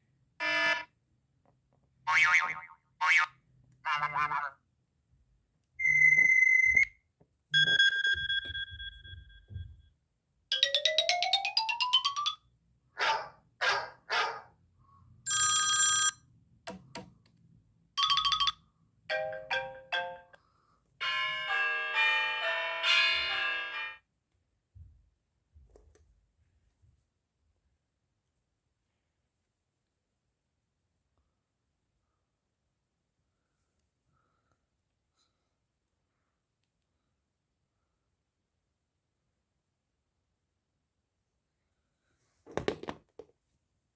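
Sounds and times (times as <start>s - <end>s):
phone ringtones: 7.6s - 9.5s, 15.3s - 16.2s, 18.0s - 20.2s.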